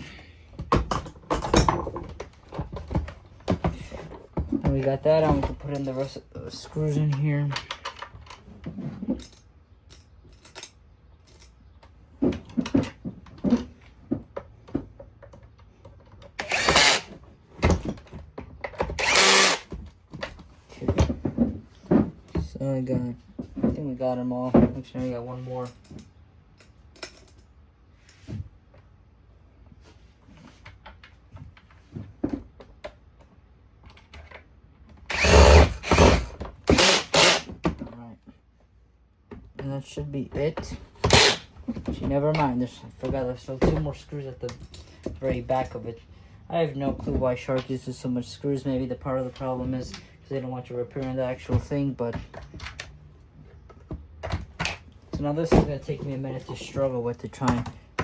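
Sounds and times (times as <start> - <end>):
power drill driving screws: 16.4 - 17.2, 18.9 - 19.7, 35.1 - 37.6, 41.0 - 41.5.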